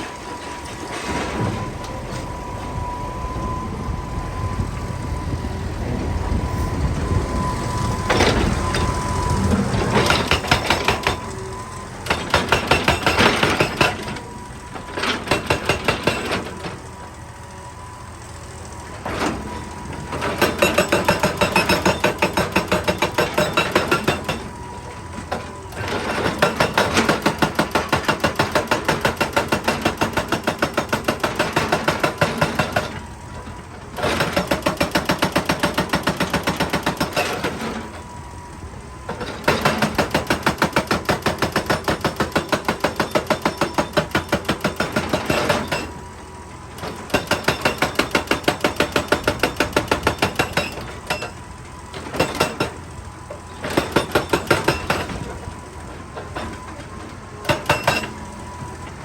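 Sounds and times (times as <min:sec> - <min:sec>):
hydraulic rock breaker hammering: 0:08.0 - 0:16.9, 0:19.0 - 0:38.0, 0:39.1 - 0:58.7.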